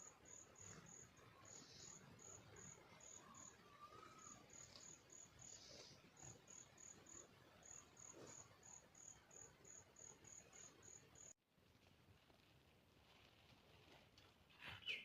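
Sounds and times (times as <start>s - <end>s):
faint cricket chirping: 0.0s - 11.4s.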